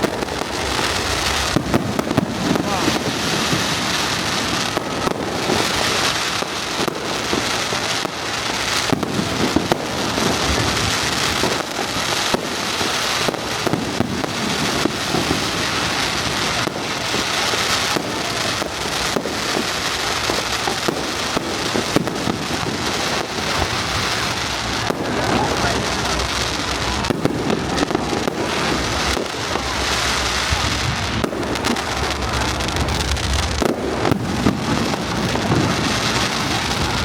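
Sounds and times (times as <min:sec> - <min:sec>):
fireworks bangs: 0:00.0 - 0:37.0
fireworks crackling and popping: 0:00.0 - 0:37.0.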